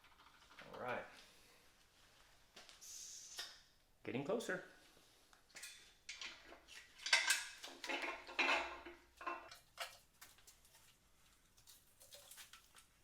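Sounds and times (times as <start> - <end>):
metal tools clinking and scraping: 5.5 - 10.8.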